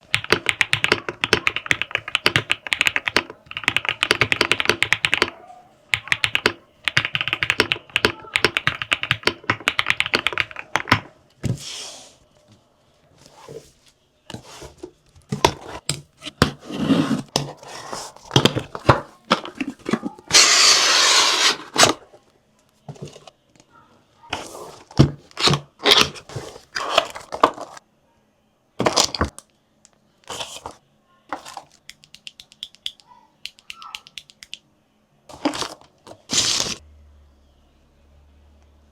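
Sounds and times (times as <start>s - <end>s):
fast typing on mechanical keyboard: 0.0s - 5.3s, 5.9s - 11.1s.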